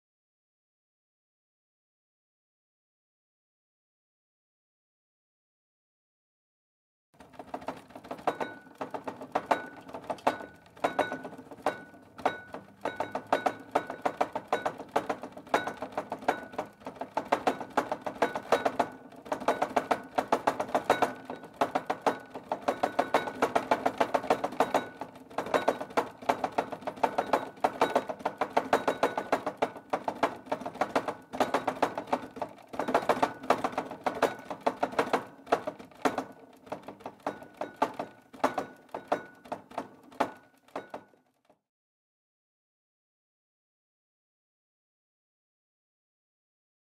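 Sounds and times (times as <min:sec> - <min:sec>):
objects rattling on a shaking shelf: 0:07.2 - 0:41.6.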